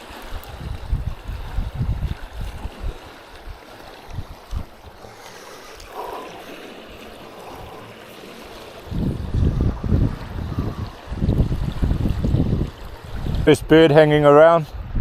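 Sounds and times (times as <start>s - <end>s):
waves washing on shore: 0.0s - 15.0s
wind buffeting microphone: 0.0s - 15.0s.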